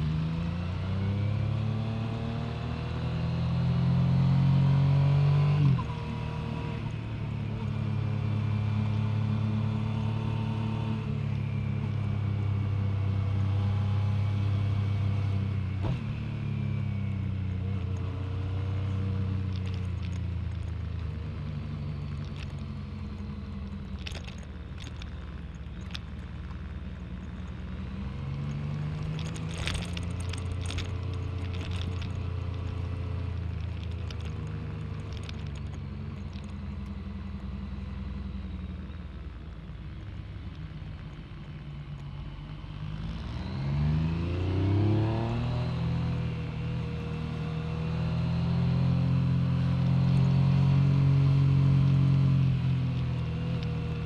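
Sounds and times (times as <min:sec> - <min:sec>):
motorcycle engine running: 0:17.2 - 0:42.8.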